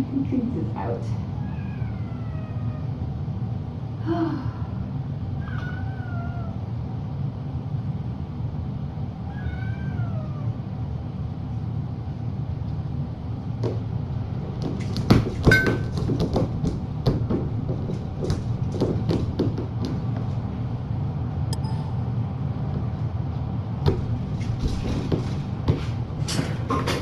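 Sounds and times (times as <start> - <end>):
steady low hum: 0.0 - 27.0
cat meowing: 1.4 - 2.9, 5.4 - 6.6, 9.3 - 10.5.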